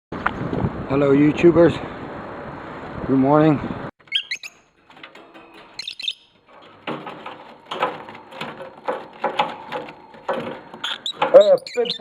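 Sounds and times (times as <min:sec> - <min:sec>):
bird chirping: 0:04.0 - 0:04.8, 0:05.6 - 0:06.4, 0:10.8 - 0:12.0.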